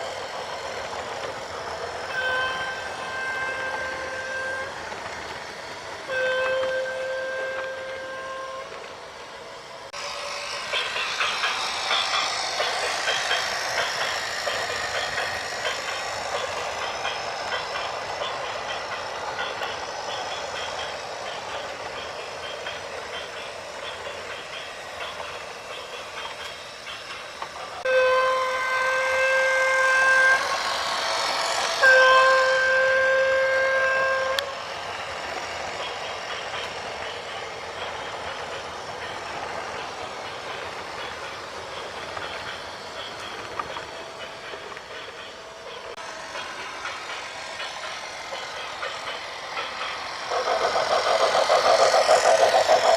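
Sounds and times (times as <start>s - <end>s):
horn blasts: 2.0s - 4.9s, 6.1s - 8.8s, 27.9s - 30.9s, 31.8s - 34.6s.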